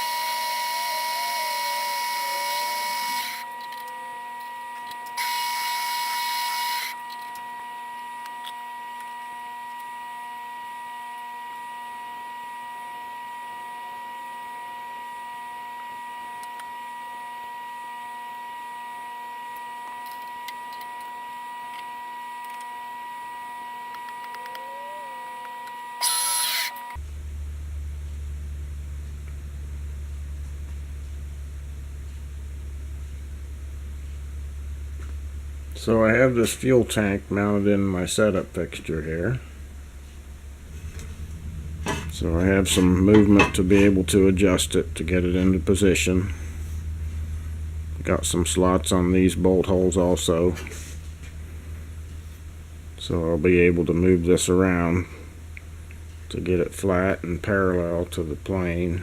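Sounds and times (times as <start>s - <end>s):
power tool motor whining: 0.0s - 11.6s, 19.6s - 27.0s
low hum: 26.0s - 59.0s
rushing noise bursts: 39.9s - 47.1s.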